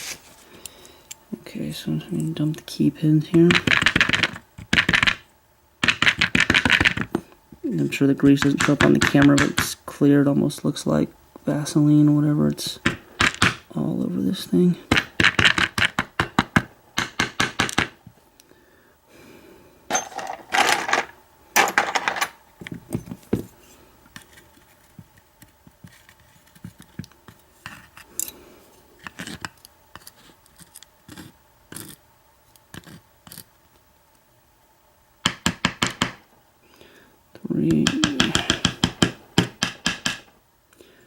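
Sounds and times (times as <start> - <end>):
small metal parts clinking: 19.9 - 22.4.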